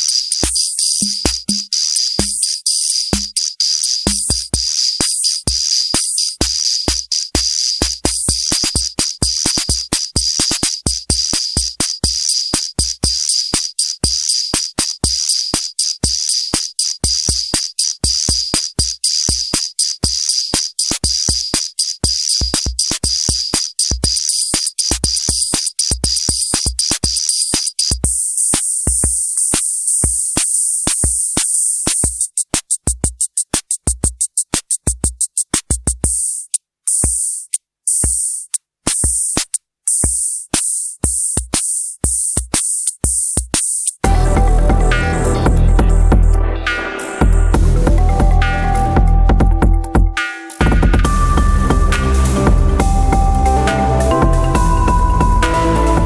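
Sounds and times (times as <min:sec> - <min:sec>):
drum machine kick thumps: 0:00.0 - 0:56.0
metallic hi-hat pattern: 0:00.0 - 0:56.0.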